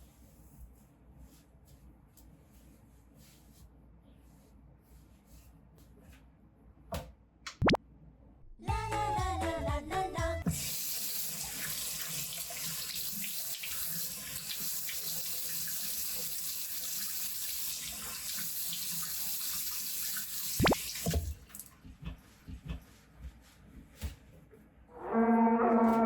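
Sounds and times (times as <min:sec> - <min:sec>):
tap water running: 0:10.4 - 0:21.7
water splashes: 0:20.6 - 0:21.6.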